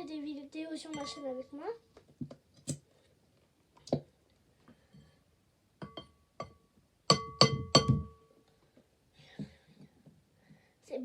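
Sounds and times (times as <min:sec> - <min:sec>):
bowl ringing: 0:01.0 - 0:01.5.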